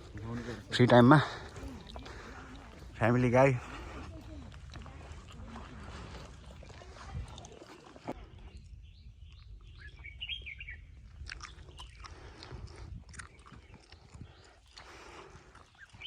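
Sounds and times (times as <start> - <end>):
footsteps crunching on trail: 0.0 - 16.0
small birds chirping: 0.0 - 16.0.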